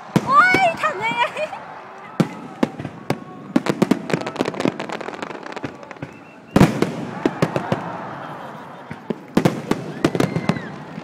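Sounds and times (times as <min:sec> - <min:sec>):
fireworks bangs: 0:00.0 - 0:11.0
fireworks crackling pops: 0:02.0 - 0:07.9.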